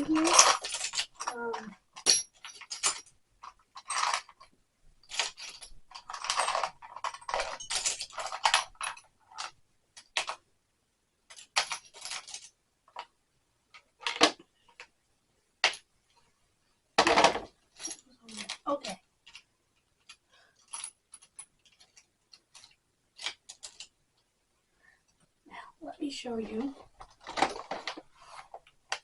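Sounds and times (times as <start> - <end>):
metal tools clinking in toolbox: 0.0 - 4.4, 5.0 - 9.6.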